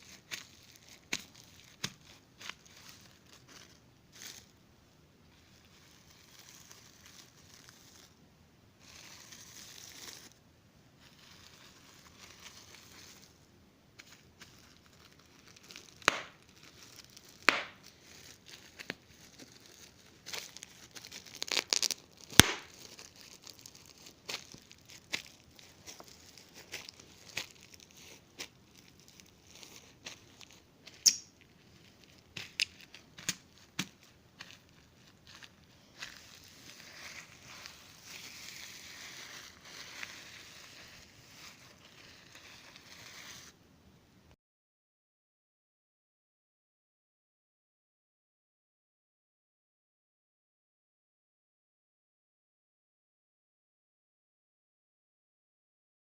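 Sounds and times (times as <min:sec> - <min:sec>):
bubble wrap popping: 0:00.0 - 0:04.5, 0:05.3 - 0:08.2, 0:08.8 - 0:10.4, 0:11.0 - 0:13.4, 0:14.0 - 0:43.6
plastic crinkling: 0:00.0 - 0:04.5, 0:05.3 - 0:08.2, 0:08.8 - 0:10.4, 0:11.0 - 0:13.4, 0:14.0 - 0:43.6.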